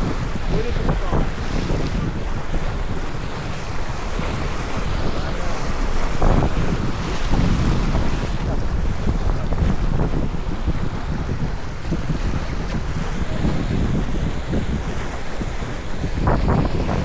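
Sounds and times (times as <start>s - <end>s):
water rushing along hull: 0.0s - 17.0s
wind buffeting microphone: 0.0s - 17.0s.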